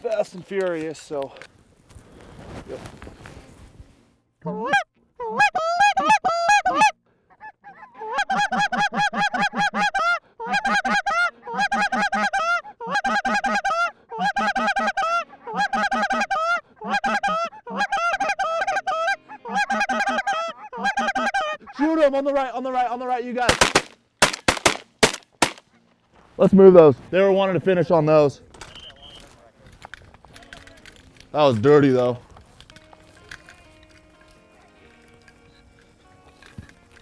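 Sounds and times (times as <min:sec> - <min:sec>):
goose call clucks and honks: 0:04.5 - 0:21.8.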